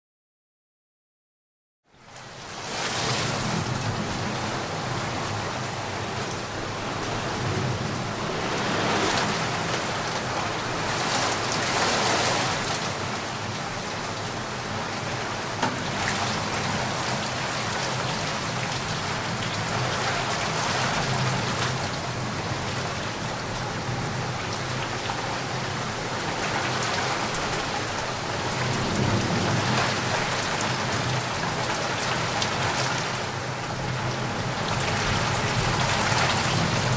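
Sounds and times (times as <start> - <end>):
heavy rain hissing: 2.5 - 36.9
rolling thunder: 28.5 - 31.2.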